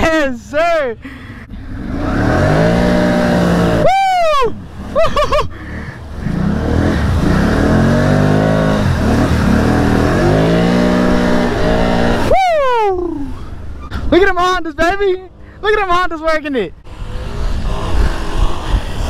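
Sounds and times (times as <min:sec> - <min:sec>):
atv engines revving through mud: 0:01.6 - 0:12.4, 0:16.9 - 0:19.0
person whooping: 0:03.8 - 0:04.6, 0:12.2 - 0:13.4.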